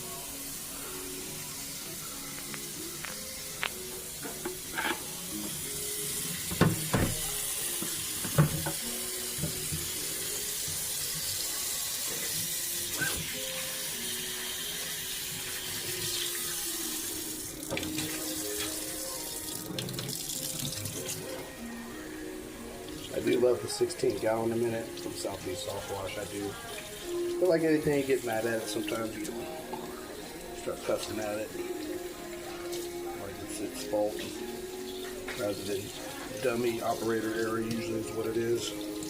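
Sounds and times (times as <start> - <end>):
tap water running: 0.0 - 39.0
pump knocks and clunks: 6.5 - 7.2, 7.8 - 8.8.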